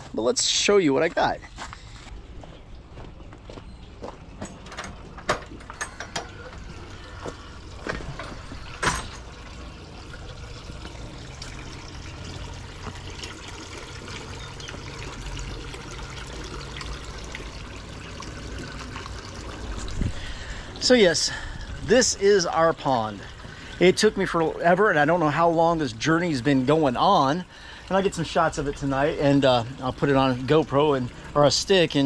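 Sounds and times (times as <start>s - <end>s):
water pouring into pond: 6.1s - 32.0s.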